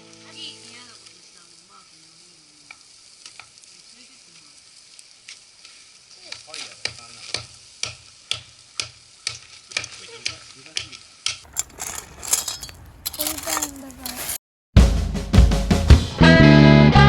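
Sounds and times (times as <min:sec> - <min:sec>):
food sizzling in a frying pan: 0:00.2 - 0:09.6
utensil scraping a pan: 0:11.5 - 0:14.4.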